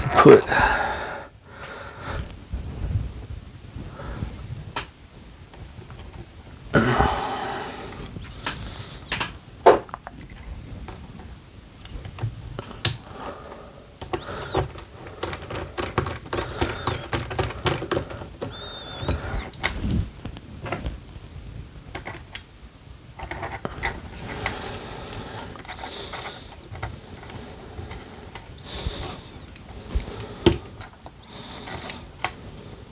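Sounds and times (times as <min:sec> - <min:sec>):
clicks and taps of parts: 0:08.4 - 0:10.1, 0:10.8 - 0:13.4, 0:14.0 - 0:21.0, 0:21.9 - 0:22.5, 0:23.2 - 0:32.4.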